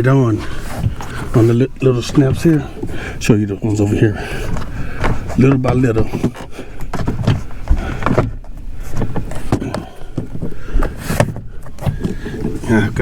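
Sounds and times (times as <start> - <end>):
low handling rumble: 0.0 - 13.0
plastic knocks and clicks: 4.5 - 12.6.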